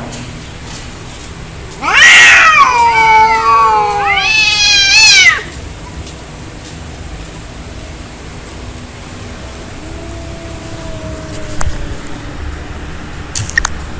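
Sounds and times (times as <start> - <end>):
angry cat yowling: 1.8 - 5.5, 9.3 - 12.4.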